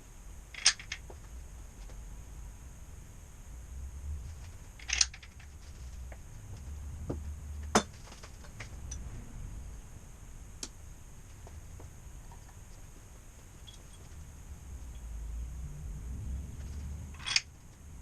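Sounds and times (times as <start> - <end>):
low steady hum: 0.0 - 18.0
metal parts clicking and clinking: 0.5 - 1.1, 4.4 - 5.9, 13.6 - 14.2, 16.6 - 17.6.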